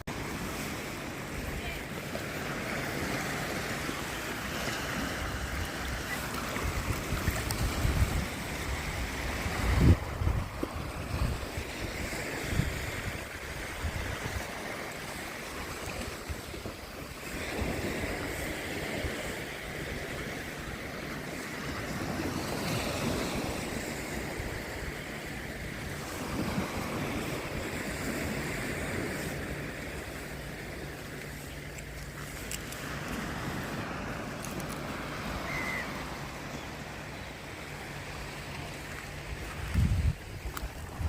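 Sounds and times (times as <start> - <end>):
waves washing onto shore: 0.0 - 41.0
wind buffeting microphone: 4.6 - 25.0, 39.2 - 41.0.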